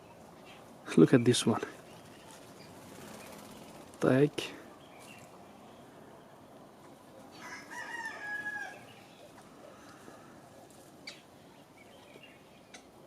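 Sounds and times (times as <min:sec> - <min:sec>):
bird calling: 0:04.6 - 0:13.0.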